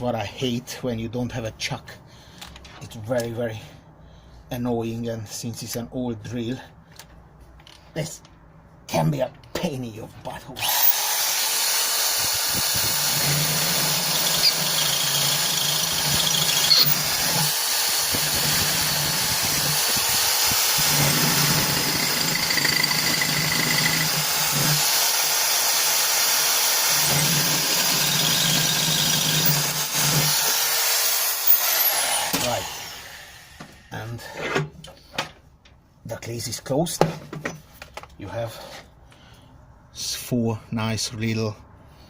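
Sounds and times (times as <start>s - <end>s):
drill bit squealing in metal: 10.6s - 11.0s, 12.5s - 17.6s, 20.8s - 24.9s, 26.9s - 30.5s, 31.3s - 32.8s
electric drill cutting steel: 10.6s - 33.6s.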